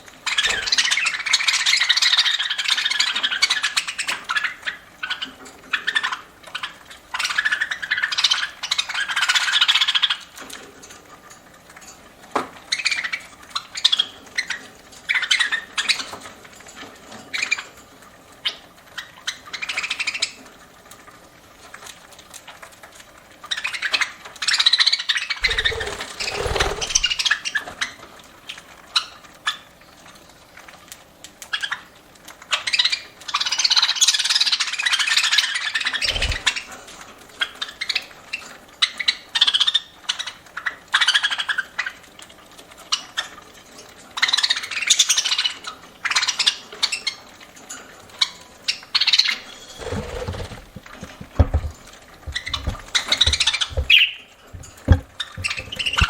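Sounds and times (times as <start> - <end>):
budgerigars chattering and chirping: 25.0 - 27.6, 52.3 - 56.0
low thumps: 49.9 - 56.0.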